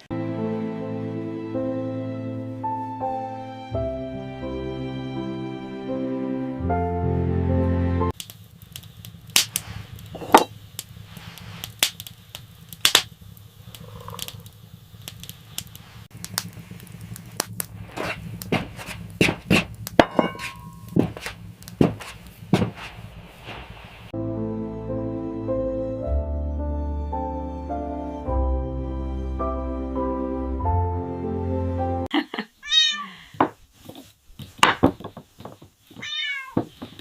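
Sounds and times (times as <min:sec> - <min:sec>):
sharp cracks and pops: 0:08.1 - 0:20.0
low steady rumble: 0:08.4 - 0:24.1.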